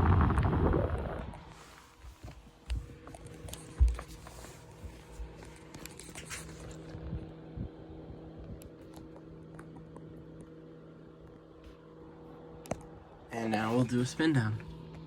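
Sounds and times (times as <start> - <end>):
airflow buffeting microphone: 0.0 - 5.4
cooling fan motor humming: 0.0 - 15.0.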